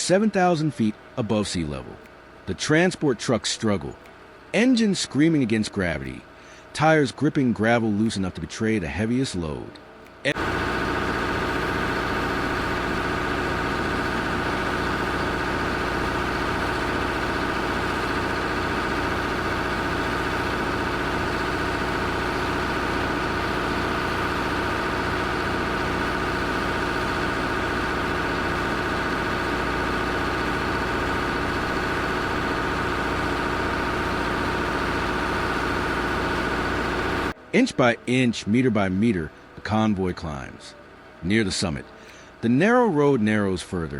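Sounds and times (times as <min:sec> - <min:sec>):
large engine running: 0:10.3 - 0:37.4.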